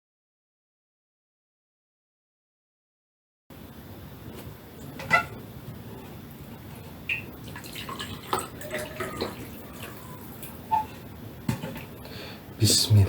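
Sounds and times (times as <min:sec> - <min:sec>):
spoon clinking on plate and bowl: 0:08.3 - 0:10.2.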